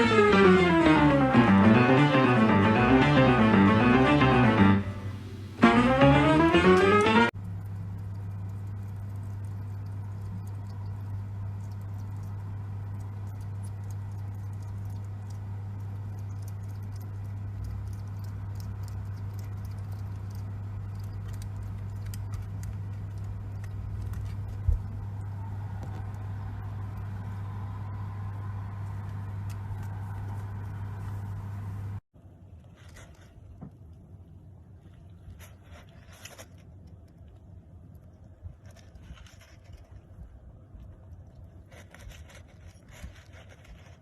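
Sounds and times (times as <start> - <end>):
steady low hum: 0.0 - 32.0
hedgehog pattering movements: 38.5 - 44.0.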